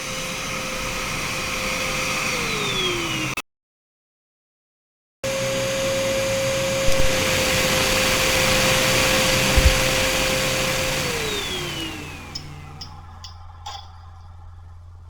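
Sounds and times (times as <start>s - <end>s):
dog dryer blower whining: 0.0s - 3.4s, 5.2s - 13.0s.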